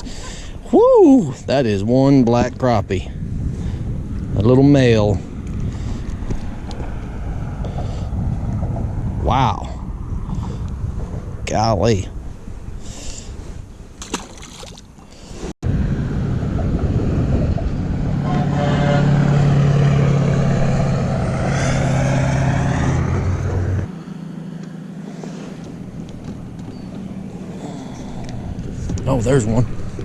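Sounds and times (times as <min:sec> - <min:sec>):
boat motor humming: 0:16.1 - 0:30.0.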